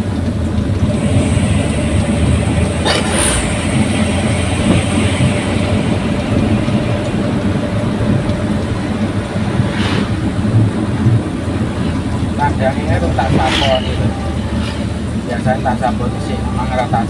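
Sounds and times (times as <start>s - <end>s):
vehicle engine and road rumble: 0.0s - 17.0s
brief rushing sounds: 9.6s - 10.5s.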